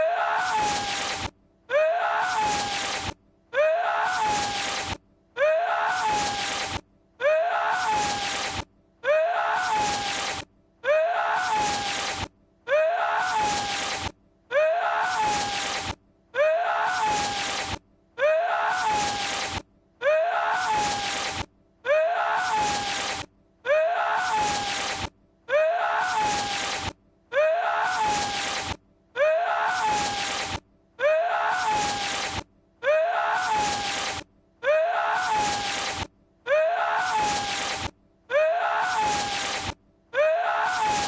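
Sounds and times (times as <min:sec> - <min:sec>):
strained vocal cry: 0:00.0 - 0:41.0.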